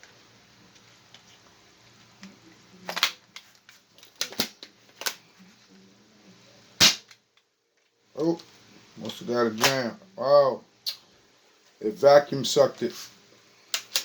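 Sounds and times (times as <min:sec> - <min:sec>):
plastic toy blaster clicks: 0:13.7 - 0:14.0.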